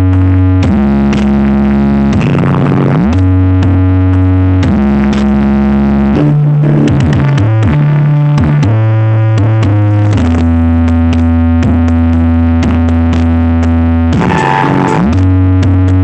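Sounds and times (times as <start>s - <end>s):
loud electronic dance music: 0.1s - 16.0s.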